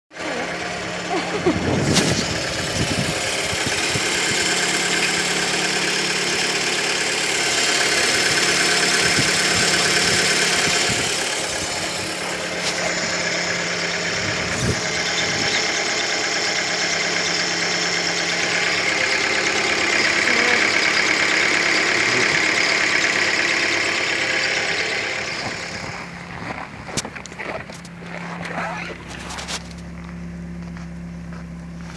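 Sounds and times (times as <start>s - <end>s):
car engine idling: 0.1s - 31.9s
whistle under engine hood: 14.2s - 16.2s.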